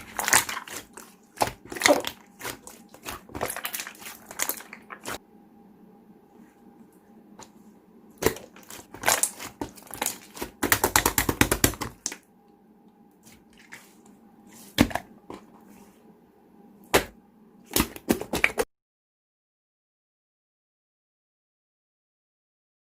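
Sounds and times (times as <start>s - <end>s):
slime popping and crackling: 0.0s - 5.2s, 8.2s - 12.2s.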